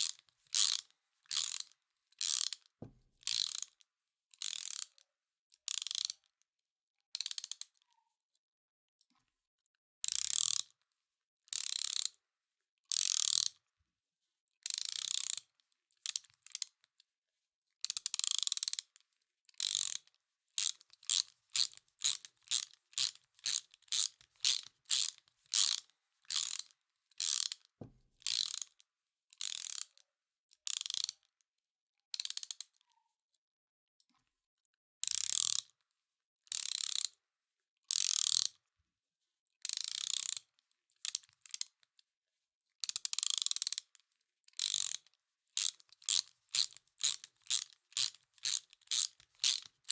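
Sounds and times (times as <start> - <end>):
ratchet wrench clicking: 0.0 - 1.6, 2.2 - 2.6, 3.3 - 3.7, 4.4 - 4.9, 5.7 - 6.1, 13.0 - 13.5, 19.6 - 20.0, 20.6 - 27.6, 28.2 - 28.7, 29.4 - 29.8, 30.7 - 31.1, 35.1 - 35.7, 36.5 - 37.1, 37.9 - 38.5, 39.8 - 40.4, 43.1 - 43.8, 44.6 - 45.0, 45.6 - 49.9.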